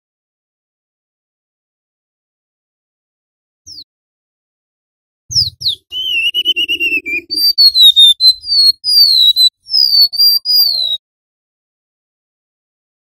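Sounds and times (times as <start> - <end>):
bird singing whistles and trills: 3.7 - 3.9, 5.3 - 11.0.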